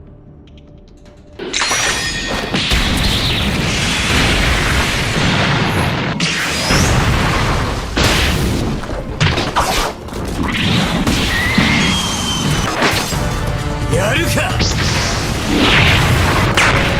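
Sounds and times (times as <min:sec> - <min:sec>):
booms and crashes: 0:01.7 - 0:09.7, 0:14.5 - 0:16.9.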